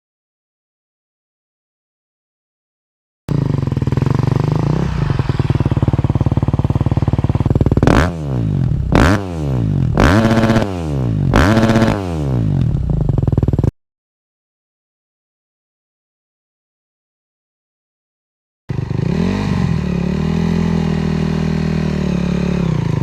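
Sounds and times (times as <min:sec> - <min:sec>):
motorbike engine idling and revving: 0:03.3 - 0:13.8, 0:18.7 - 0:23.0.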